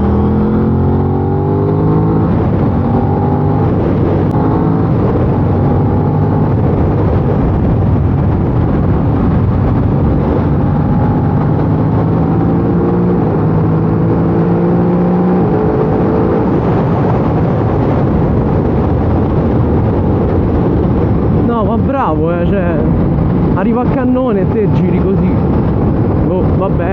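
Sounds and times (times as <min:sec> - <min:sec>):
motorcycle engine: 0:00.0 - 0:21.4
wind rush: 0:00.0 - 0:26.9.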